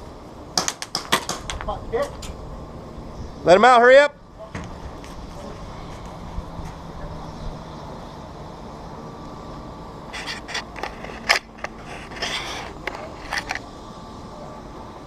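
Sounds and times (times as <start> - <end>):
steady background hum: 0.0 - 15.0
short scrape: 10.1 - 13.6.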